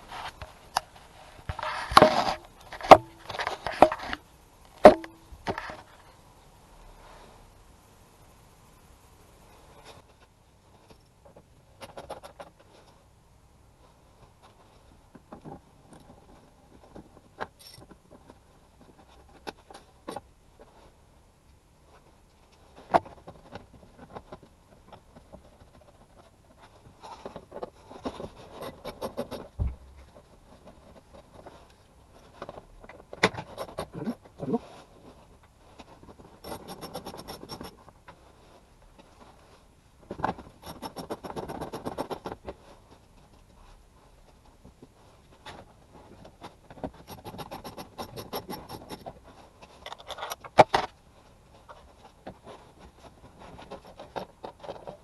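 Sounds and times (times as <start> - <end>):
scraping and rubbing on car panels: 22.7 - 49.9.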